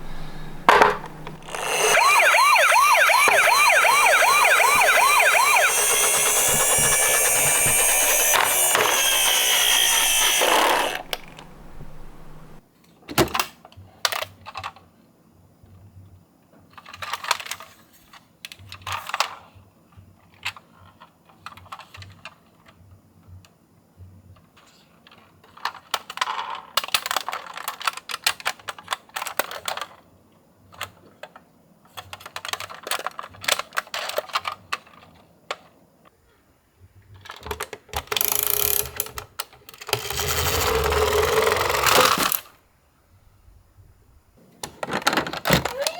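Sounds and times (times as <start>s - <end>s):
toy cars clicking and rattling: 0.7s - 11.3s, 37.3s - 42.5s.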